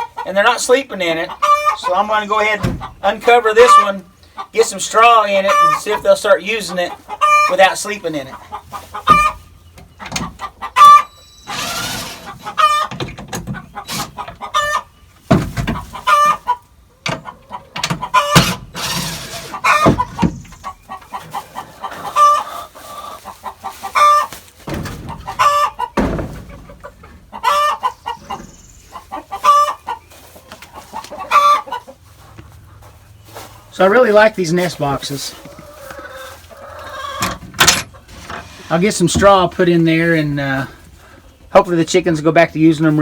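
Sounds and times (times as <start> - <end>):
chickens clucking: 0.0 - 43.0
rustling: 18.4 - 27.3.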